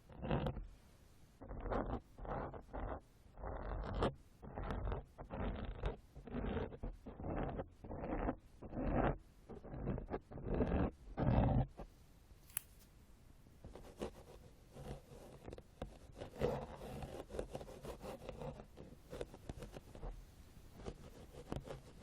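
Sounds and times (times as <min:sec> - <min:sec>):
ear pick scraping: 0:12.4 - 0:12.9
sharp click: 0:12.4 - 0:12.9.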